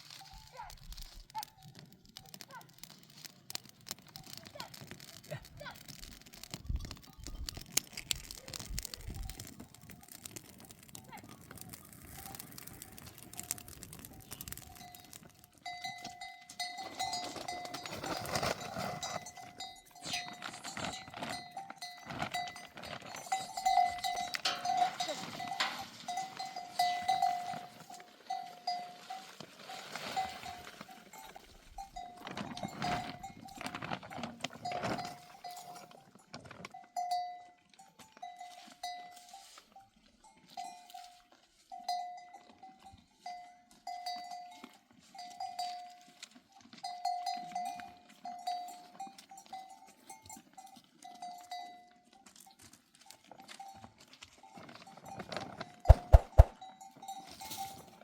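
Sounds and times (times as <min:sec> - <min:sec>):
animal bell clanking: 0:00.0 - 0:02.4, 0:12.0 - 0:58.0
flock scuffling and rustling: 0:55.4 - 0:56.6.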